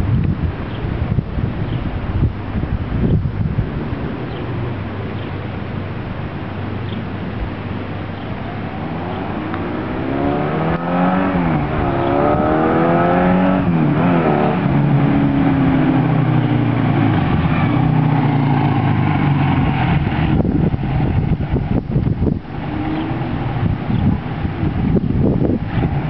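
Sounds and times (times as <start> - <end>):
motorcycle engine accelerating: 7.3 - 26.0.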